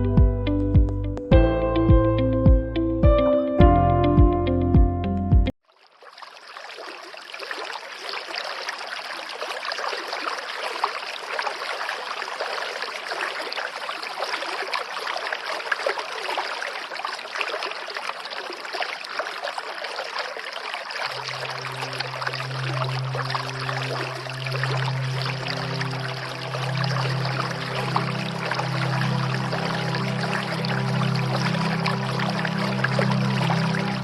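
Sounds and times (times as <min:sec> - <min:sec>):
waterfall splashing into stream: 0:05.6 - 0:34.0
low held musical note: 0:21.2 - 0:34.0.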